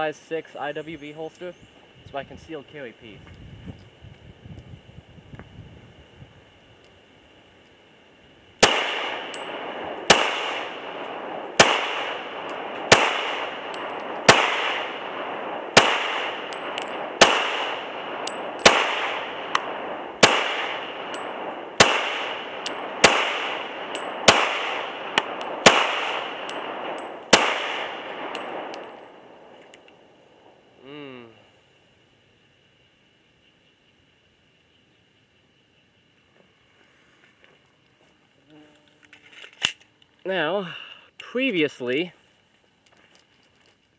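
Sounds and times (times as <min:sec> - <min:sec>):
pistol shots echoing: 0:08.6 - 0:29.6.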